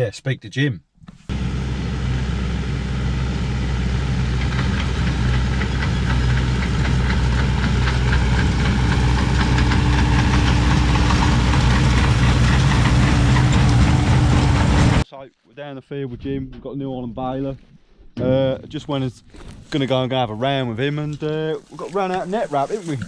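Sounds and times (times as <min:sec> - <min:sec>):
heavy engine running: 0:01.3 - 0:15.0
rapid knocking clatter: 0:04.0 - 0:15.0.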